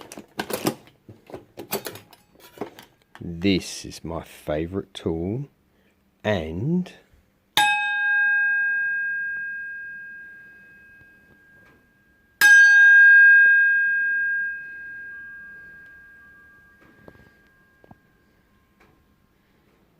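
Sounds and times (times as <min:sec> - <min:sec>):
metal blade ringing: 0:07.6 - 0:17.9.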